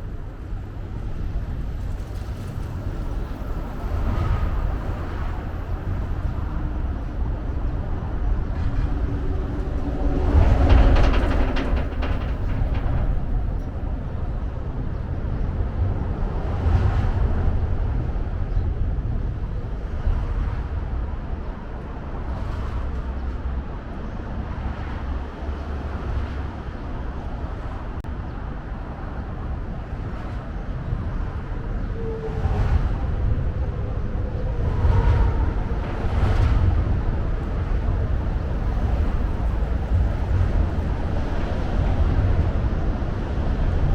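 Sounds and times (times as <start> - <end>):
distant city traffic rumble: 0.0 - 43.9.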